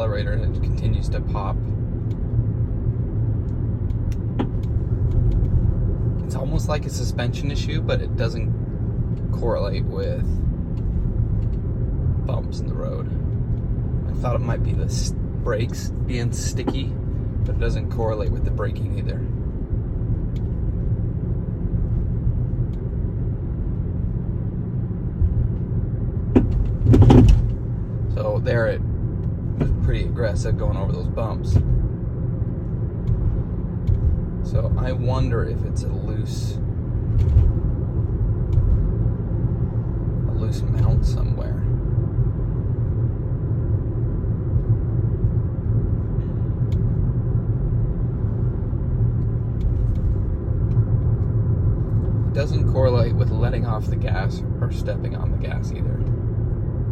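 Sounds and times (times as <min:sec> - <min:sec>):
road and tyre rumble: 0:00.0 - 0:56.9
low thump: 0:26.3 - 0:27.6.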